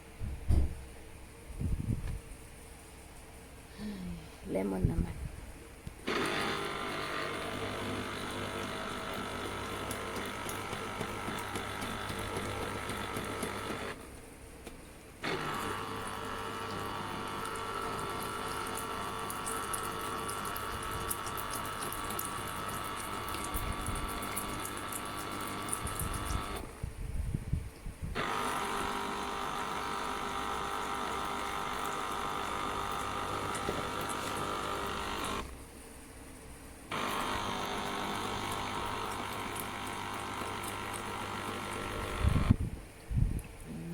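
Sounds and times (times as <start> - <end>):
electric juicer motor running: 6.0 - 14.0, 15.2 - 27.0, 28.2 - 35.6, 36.9 - 42.7.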